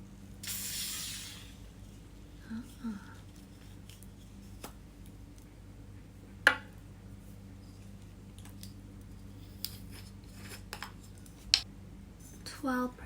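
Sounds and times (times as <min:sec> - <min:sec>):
faint steady hum: 0:00.0 - 0:13.0
small objects clicking and tapping: 0:09.5 - 0:11.7.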